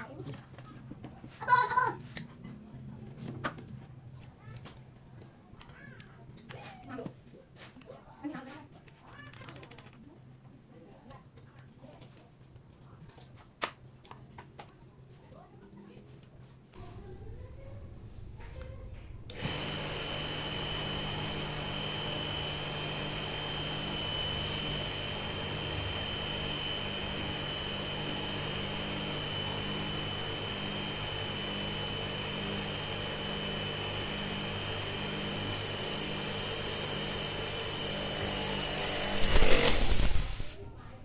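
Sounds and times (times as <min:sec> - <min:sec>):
pressure washer running: 0:19.3 - 0:40.6.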